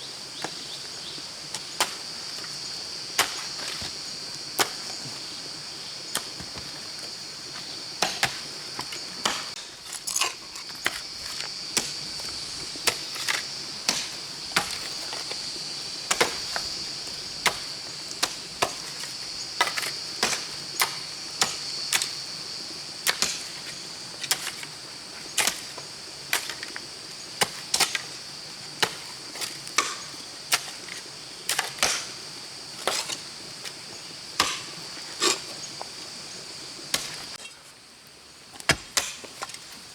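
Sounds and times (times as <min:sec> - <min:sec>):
insects droning: 0:00.0 - 0:39.9
hand tool chopping into earth: 0:09.2 - 0:12.0, 0:34.4 - 0:35.4, 0:38.6 - 0:39.7.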